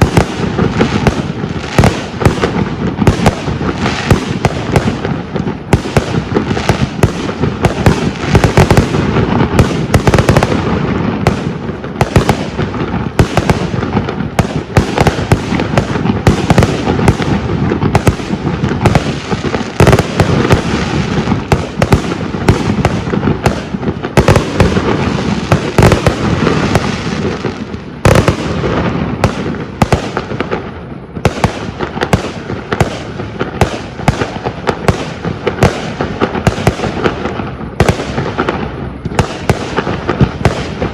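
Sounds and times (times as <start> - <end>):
fireworks bursting and crackling: 0.0 - 40.9.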